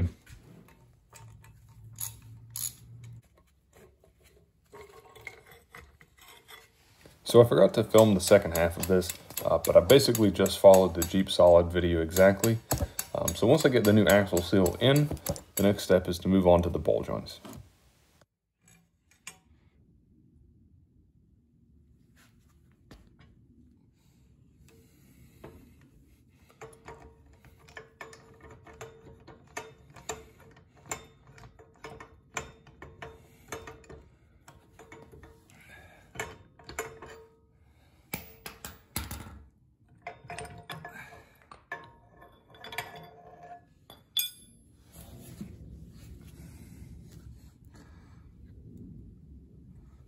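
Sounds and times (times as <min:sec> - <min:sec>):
metallic clatter: 0:00.0 - 0:16.0
steel tools clinking: 0:00.7 - 0:03.2, 0:03.8 - 0:16.2, 0:40.0 - 0:44.6.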